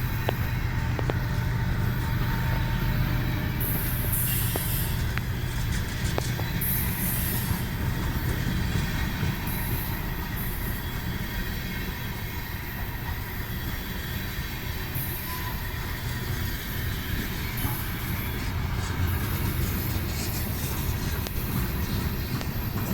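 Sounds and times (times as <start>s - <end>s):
freight train rumbling past: 0.0s - 22.9s
high-pitched wheel squeal: 15.1s - 16.0s.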